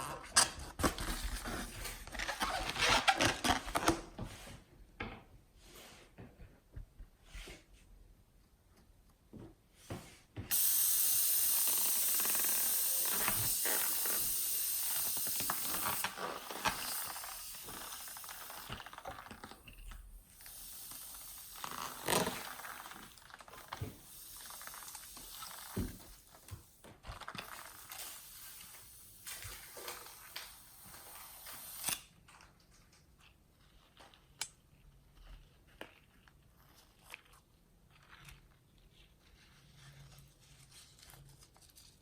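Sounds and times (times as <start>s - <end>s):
air hissing out of balloon: 10.5s - 19.6s, 20.2s - 32.0s.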